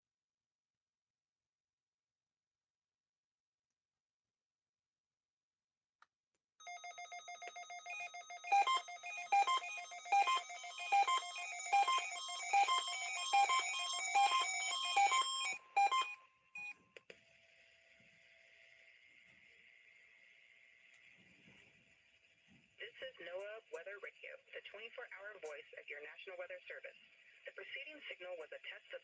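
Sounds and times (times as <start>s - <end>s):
electronic bell-like melody: 6.6s - 16.7s.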